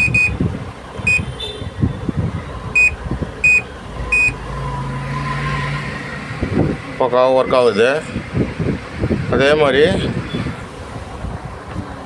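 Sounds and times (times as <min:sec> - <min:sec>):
short electronic beeps: 0:00.0 - 0:00.4, 0:01.1 - 0:01.3, 0:02.8 - 0:04.4.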